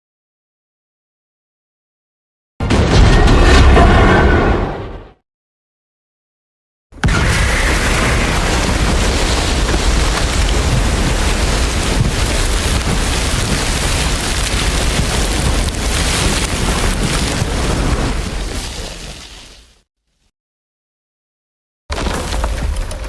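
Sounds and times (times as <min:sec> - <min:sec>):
boom with crackling rumble: 0:07.0 - 0:19.8.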